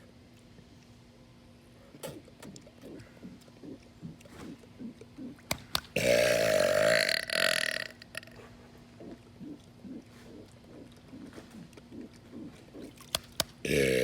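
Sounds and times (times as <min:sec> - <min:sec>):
man burping: 0:06.0 - 0:08.4, 0:13.6 - 0:14.0.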